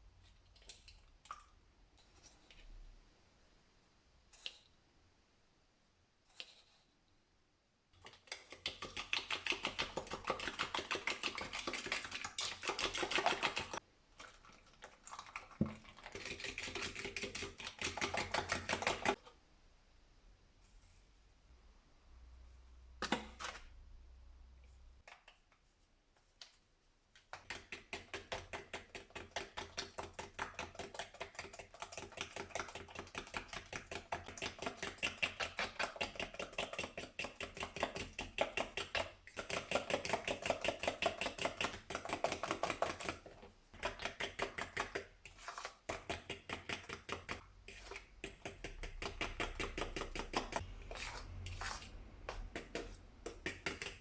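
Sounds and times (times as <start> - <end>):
utensil strokes in a bowl: 27.4 - 54.0.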